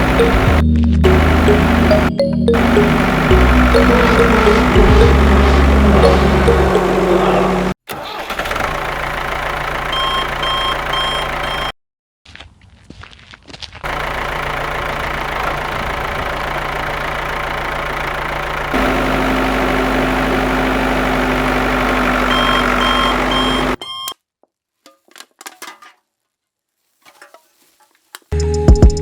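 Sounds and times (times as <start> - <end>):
engine running: 0.0 - 11.7, 13.8 - 23.8
short beeps: 1.1 - 7.1, 22.3 - 24.2.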